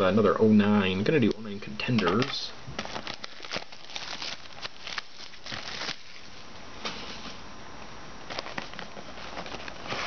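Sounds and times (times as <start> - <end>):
foil wrappers crinkling: 1.8 - 7.2, 8.2 - 10.0.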